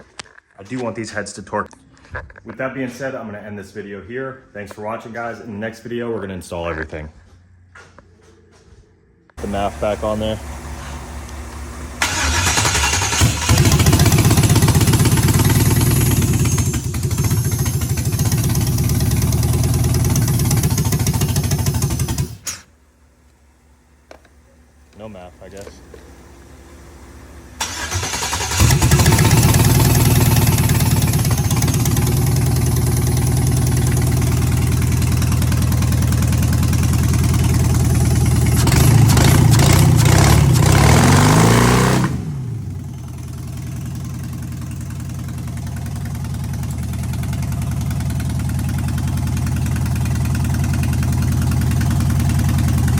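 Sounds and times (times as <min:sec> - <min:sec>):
car engine idling and revving: 0:09.4 - 0:52.9
car engine cranking: 0:10.0 - 0:23.4, 0:24.0 - 0:52.9.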